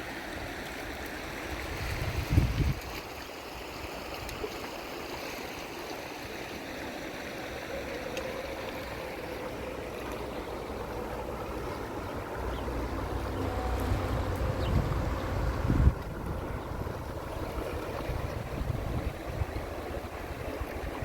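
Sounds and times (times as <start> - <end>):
river water flowing: 0.0 - 21.0
wind buffeting microphone: 1.6 - 3.0, 9.8 - 21.0.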